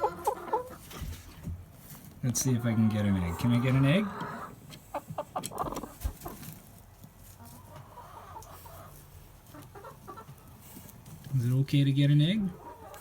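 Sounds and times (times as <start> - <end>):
hen clucking and grumbling: 0.0 - 0.8, 2.6 - 6.5, 7.4 - 10.6, 12.4 - 13.0.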